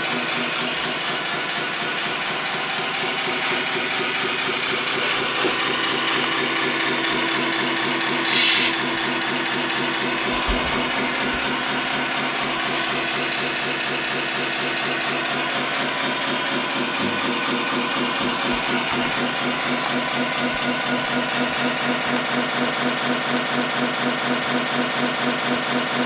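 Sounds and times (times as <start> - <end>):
diesel truck engine idling: 0.0 - 26.0
air hiss: 8.2 - 8.8.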